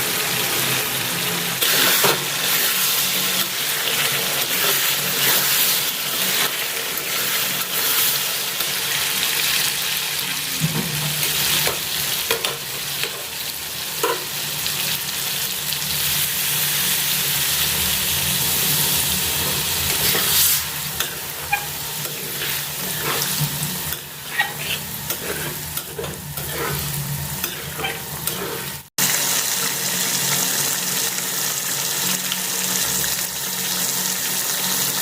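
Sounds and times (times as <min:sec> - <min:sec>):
chicken sizzling in a pan: 0:00.0 - 0:35.0
spoon scraping a pan: 0:19.3 - 0:28.9.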